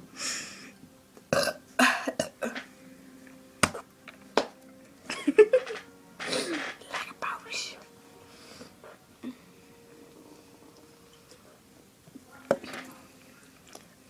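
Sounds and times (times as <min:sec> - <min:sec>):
person burping: 0:01.3 - 0:02.7.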